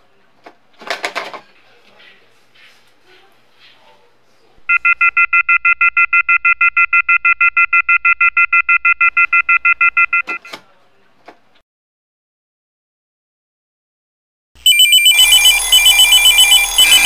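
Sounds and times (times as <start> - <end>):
alarm clock beeping: 4.7 - 10.4, 14.6 - 17.0.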